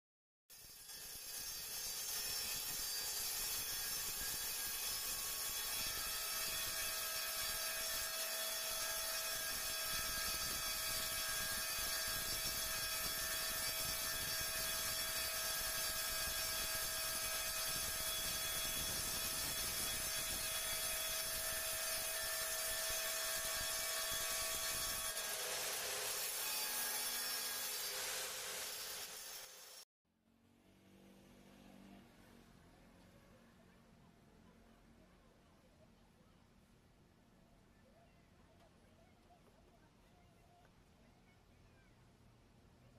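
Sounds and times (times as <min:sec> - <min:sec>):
power tool whining on wood: 0:00.6 - 0:29.8.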